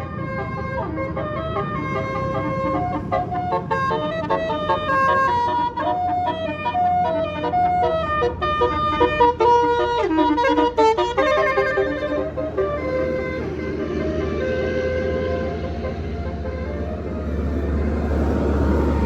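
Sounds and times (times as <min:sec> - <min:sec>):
bus engine running: 0:00.0 - 0:19.0
bus horn playing a melody: 0:00.0 - 0:19.0.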